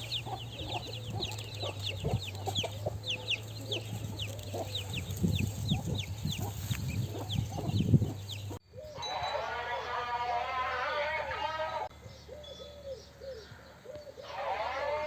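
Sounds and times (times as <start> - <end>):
chickens clucking: 0.0 - 8.6.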